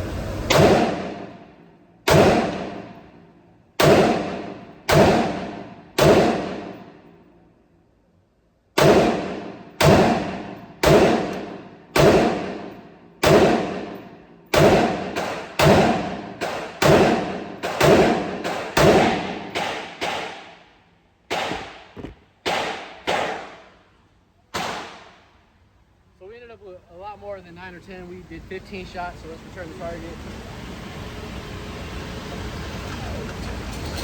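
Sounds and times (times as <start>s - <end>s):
gunshots: 0.5s - 1.4s, 2.0s - 3.0s, 3.8s - 6.9s, 8.8s - 20.6s, 21.3s - 23.7s, 24.5s - 25.2s.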